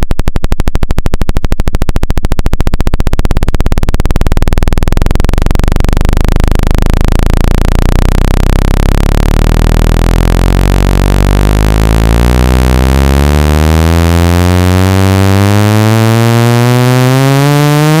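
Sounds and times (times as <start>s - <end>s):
buzzy rising synthetic tone: 4.9s - 18.0s.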